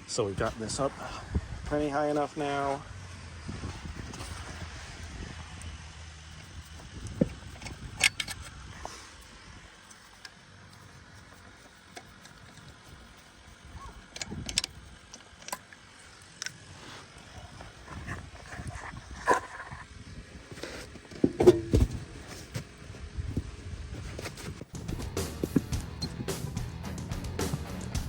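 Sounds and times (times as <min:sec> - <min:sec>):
metallic clinks of lug nuts: 0:07.2 - 0:08.5.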